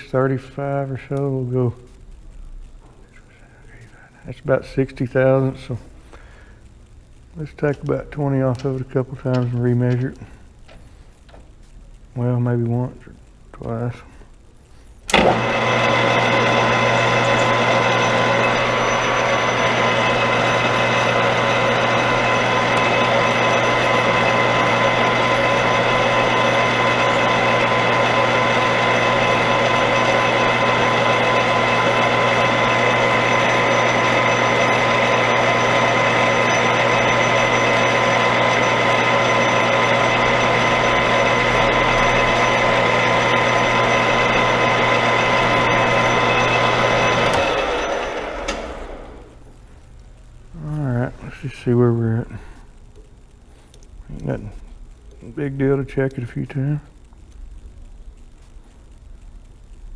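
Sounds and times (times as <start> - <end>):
metal lathe motor and gear whine: 15.1 - 49.4.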